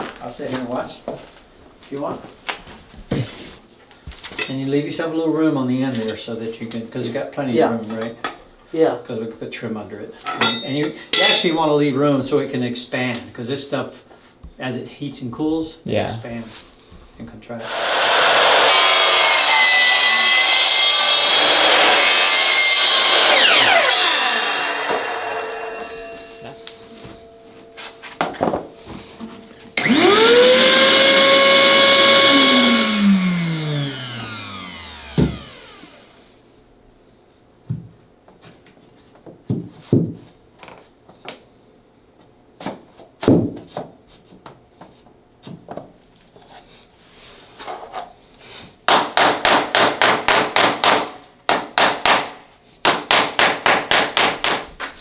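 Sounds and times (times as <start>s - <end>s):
power saw cutting plank: 17.6s - 28.3s, 29.8s - 36.2s.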